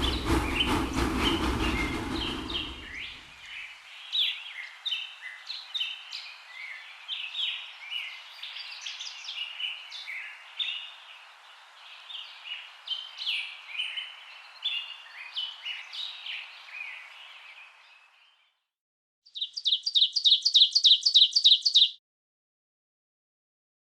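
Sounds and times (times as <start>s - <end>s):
rapid identical bird chirps: 19.3s - 22.0s
small birds chirping: 19.3s - 22.0s.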